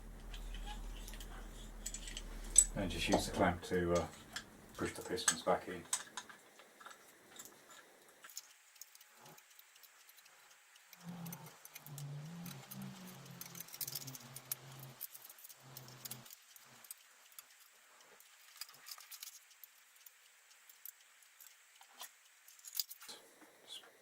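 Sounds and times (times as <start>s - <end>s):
low wavering hum: 0.0s - 5.3s
metallic clicks and scrapes of clamp: 0.2s - 2.8s, 10.9s - 17.6s, 21.8s - 23.1s.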